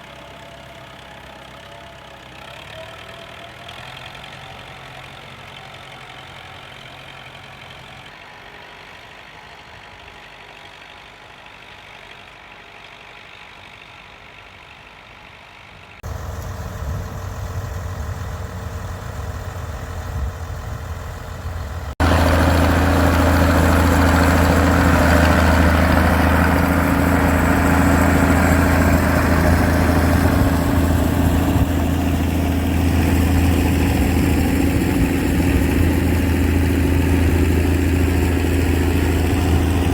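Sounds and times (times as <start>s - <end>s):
tractor engines running: 0.0s - 39.9s.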